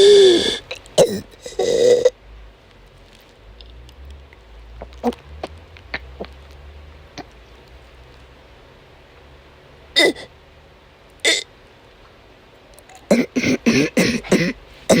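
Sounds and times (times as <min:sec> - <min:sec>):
woman coughing: 0:10.0 - 0:10.3, 0:13.1 - 0:15.0.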